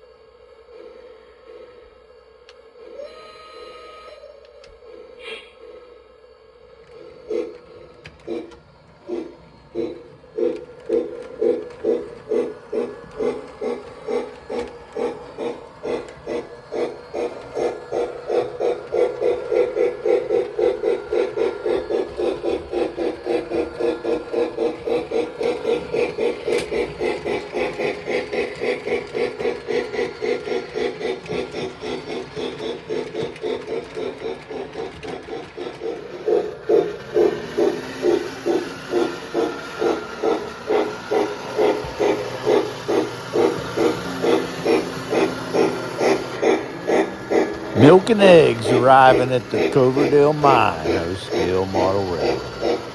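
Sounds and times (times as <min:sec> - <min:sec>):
model train running rhythmically: 0:00.0 - 0:52.9.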